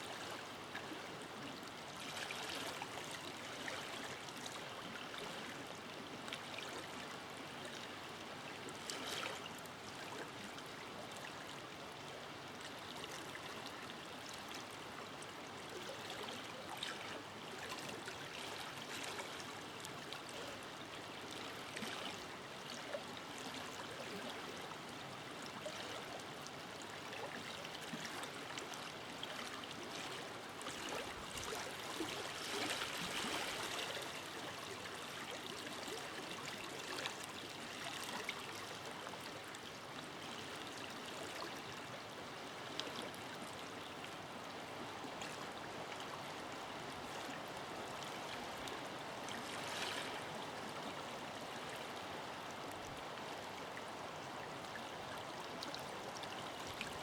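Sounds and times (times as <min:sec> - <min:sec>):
water splashes and gurgles: 0:00.0 - 0:07.9, 0:08.6 - 0:57.0
river water rushing: 0:41.1 - 0:57.0.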